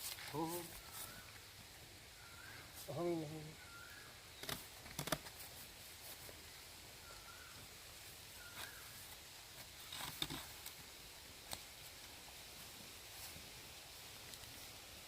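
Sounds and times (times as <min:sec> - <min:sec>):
faint bird chirps: 0:00.3 - 0:04.7, 0:06.5 - 0:09.2.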